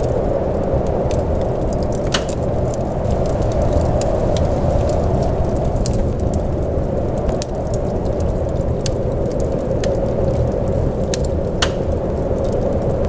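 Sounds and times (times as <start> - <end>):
muffled rain hiss: 0.0 - 13.0
sharp crackling clicks: 0.8 - 6.4, 7.1 - 13.0.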